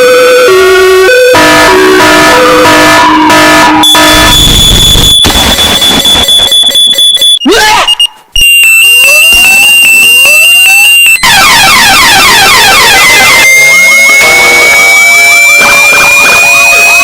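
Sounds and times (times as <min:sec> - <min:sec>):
up-and-down alarm warble: 0:00.0 - 0:08.8, 0:10.5 - 0:17.0
pulsing alarm clock tone: 0:01.2 - 0:17.0.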